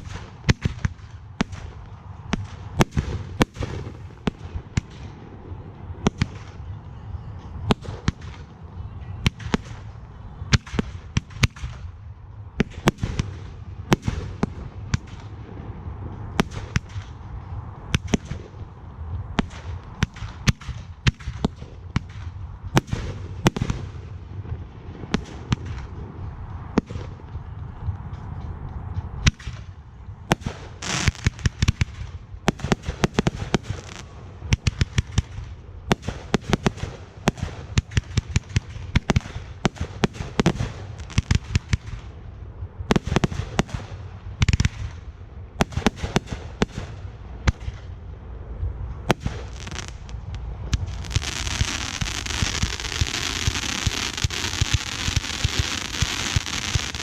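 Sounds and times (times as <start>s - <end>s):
rapid firework cracks: 19.4s - 24.0s, 30.3s - 42.1s, 49.1s - 57.0s.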